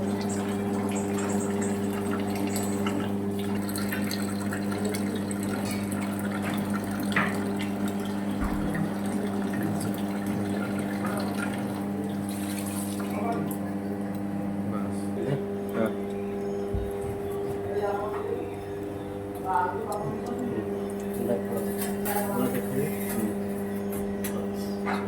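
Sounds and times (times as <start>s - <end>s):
small motor humming: 0.0s - 17.6s.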